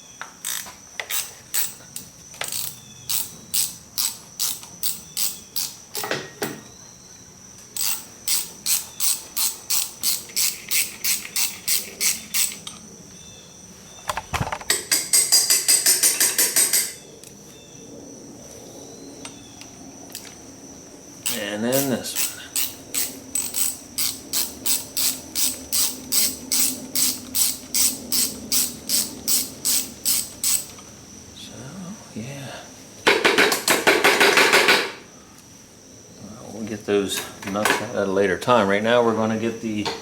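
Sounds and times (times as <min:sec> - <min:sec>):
socket ratchet clicking: 0:00.4 - 0:06.1, 0:07.8 - 0:12.8, 0:21.2 - 0:30.8.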